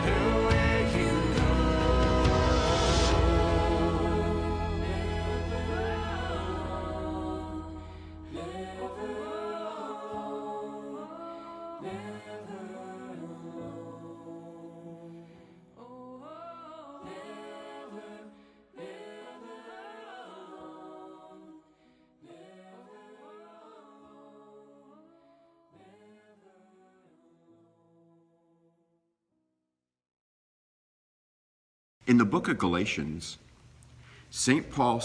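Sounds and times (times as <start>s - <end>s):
wordless voices singing in harmony: 0.0s - 27.5s.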